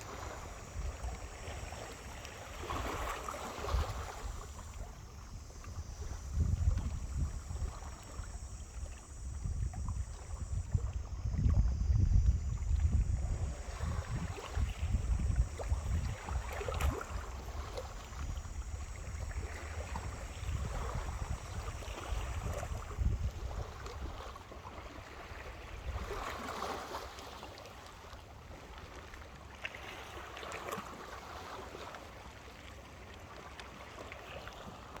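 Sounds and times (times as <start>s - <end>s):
small waves washing onto beach: 0.0s - 35.0s
wind buffeting microphone: 2.5s - 24.2s.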